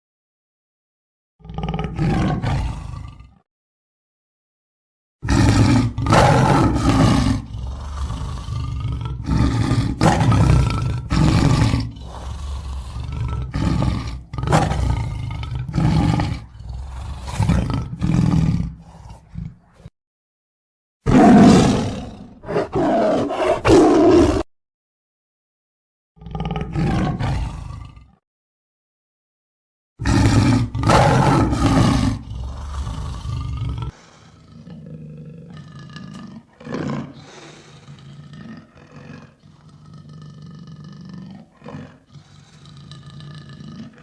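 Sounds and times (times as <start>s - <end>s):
lion roaring: 1.4s - 3.4s, 5.2s - 19.9s, 21.1s - 24.5s, 26.2s - 28.2s, 30.0s - 44.0s
lion grunts: 5.2s - 19.9s, 30.0s - 44.0s.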